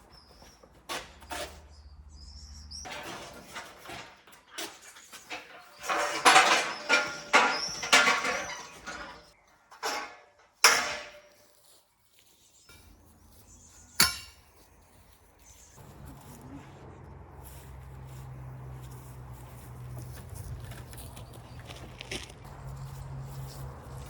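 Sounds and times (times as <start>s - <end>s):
hammer striking metal: 14.0s - 14.5s.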